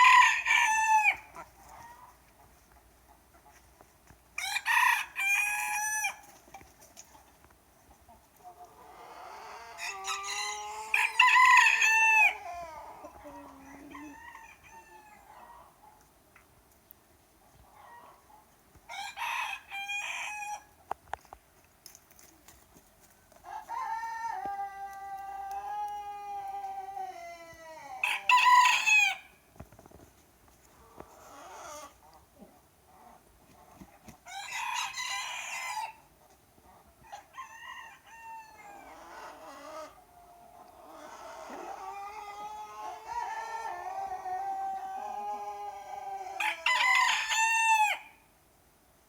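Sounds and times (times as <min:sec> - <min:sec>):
roosters crowing: 0:00.0 - 0:02.0, 0:04.4 - 0:06.3, 0:08.8 - 0:15.7, 0:18.9 - 0:20.7, 0:23.4 - 0:29.4, 0:34.2 - 0:36.0, 0:37.1 - 0:40.0, 0:40.8 - 0:48.2.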